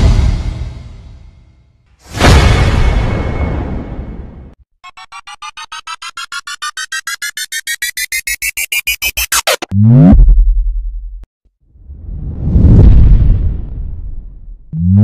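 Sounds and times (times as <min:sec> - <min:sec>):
electronic beeps rising in pitch: 0:04.8 - 0:11.0.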